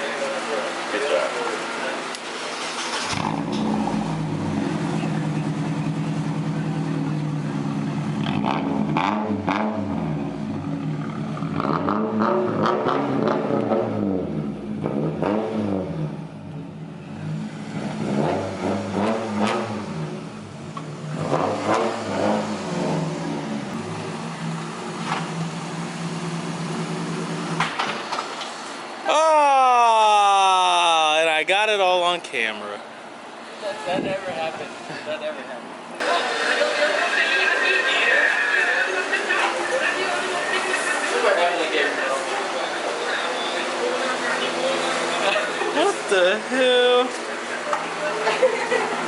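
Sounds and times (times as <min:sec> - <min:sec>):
car engine idling and revving: 0:00.0 - 0:29.0.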